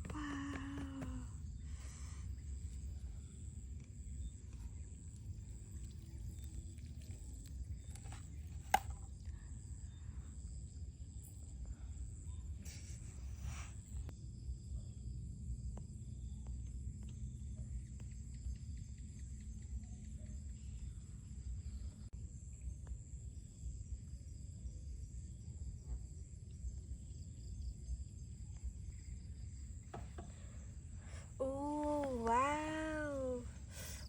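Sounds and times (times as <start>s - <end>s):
low outdoor rumble: 0.0s - 22.4s.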